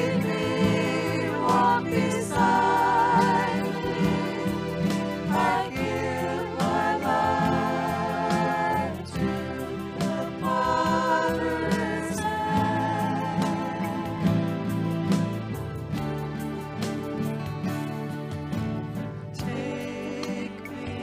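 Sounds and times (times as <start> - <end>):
several voices singing: 0.0 - 15.1, 19.4 - 21.0
instrumental accompaniment: 0.0 - 21.0.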